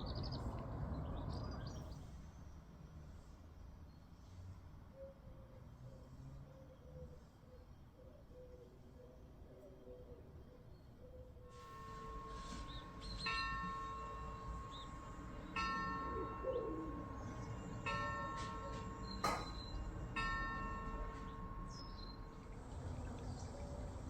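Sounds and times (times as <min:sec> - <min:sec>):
bell-like chimes ringing: 0:11.5 - 0:22.6.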